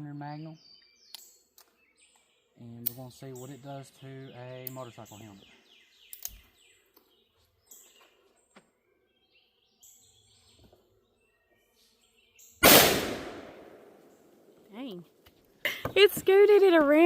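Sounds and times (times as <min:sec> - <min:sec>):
bird chirps: 0:00.0 - 0:12.6
revolver gunshot: 0:12.6 - 0:14.0.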